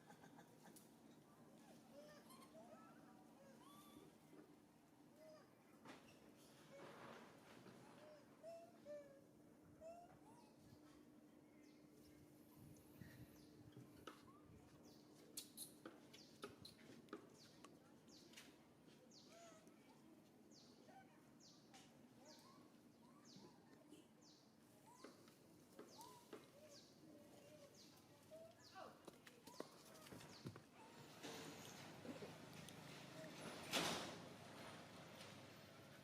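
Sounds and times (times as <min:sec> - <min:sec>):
soft squeaks and clicks: 0:01.6 - 0:04.4, 0:13.0 - 0:18.5, 0:24.8 - 0:28.6, 0:29.4 - 0:35.4.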